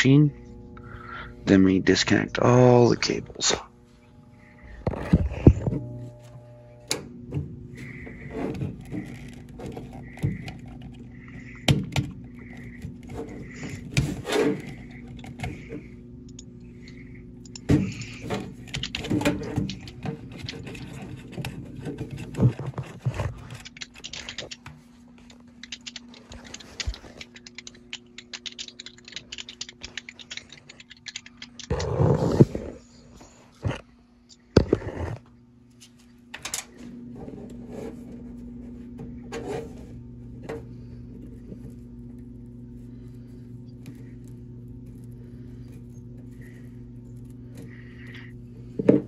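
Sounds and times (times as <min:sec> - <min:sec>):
steady low hum: 0:00.0 - 0:49.0
rapid ticking: 0:23.5 - 0:32.0
clicks and knocks of handling parts: 0:35.8 - 0:36.8.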